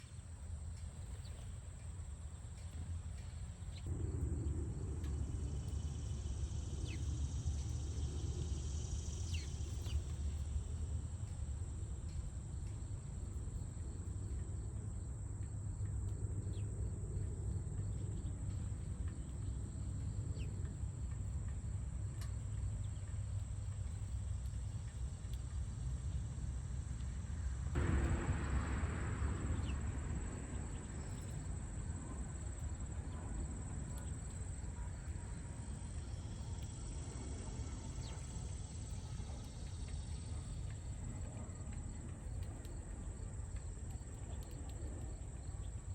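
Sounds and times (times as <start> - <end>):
low rumble: 3.8 - 14.1, 27.7 - 34.8.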